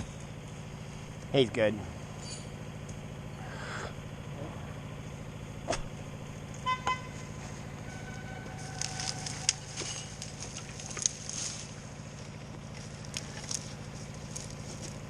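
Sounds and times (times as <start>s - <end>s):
distant engine running: 0.0s - 15.0s
electronic whistle signal: 6.7s - 7.1s
sharp ticks and crackles: 8.8s - 15.0s.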